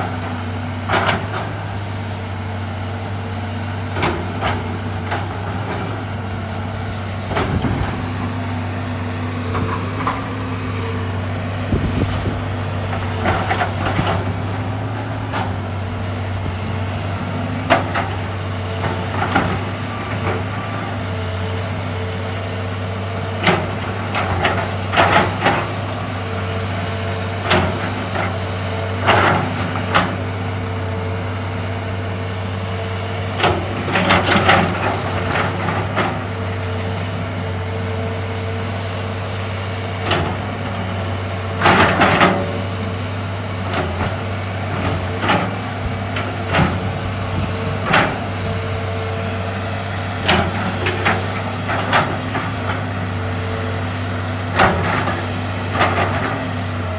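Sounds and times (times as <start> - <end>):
excavator diesel engine droning: 0.0 - 56.9
knocks and clatter of digging: 3.9 - 22.1, 39.4 - 56.9.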